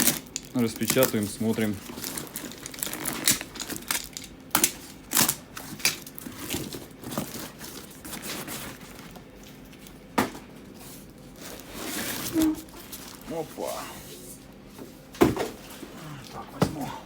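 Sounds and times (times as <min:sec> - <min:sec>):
packaging ripping: 0:00.0 - 0:09.1
packaging crinkling: 0:00.0 - 0:10.1, 0:11.0 - 0:13.8.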